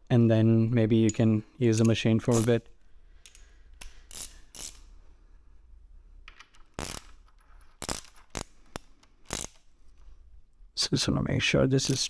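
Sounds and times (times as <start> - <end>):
ratchet wrench clicking: 1.8 - 2.6, 3.3 - 4.9, 6.7 - 9.6, 11.8 - 12.0.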